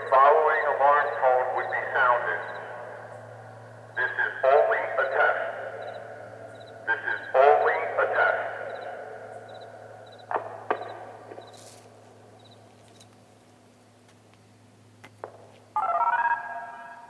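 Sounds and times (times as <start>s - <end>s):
echoing siren voice message: 0.0s - 10.8s, 15.8s - 17.0s
loud siren tone: 15.8s - 17.0s.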